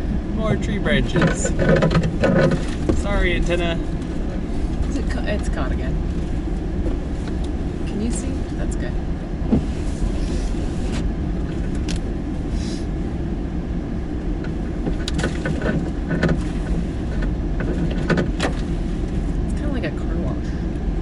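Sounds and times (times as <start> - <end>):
truck engine and tyres rumbling: 0.0 - 21.0.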